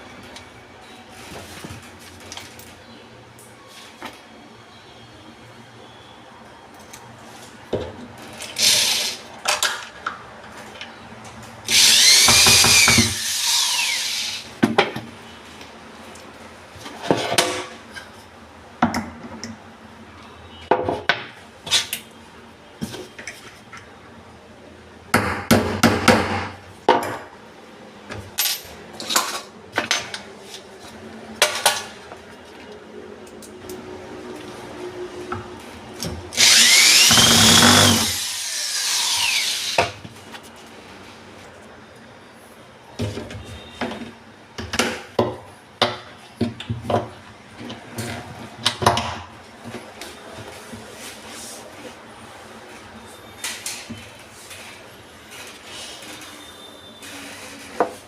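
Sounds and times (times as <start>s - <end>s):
power tool motor whining: 11.7s - 14.4s, 36.4s - 39.8s.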